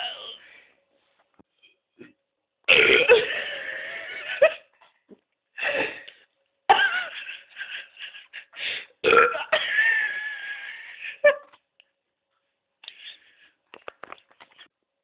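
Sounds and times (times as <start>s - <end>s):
woman burping: 2.7s - 3.5s, 9.0s - 10.2s.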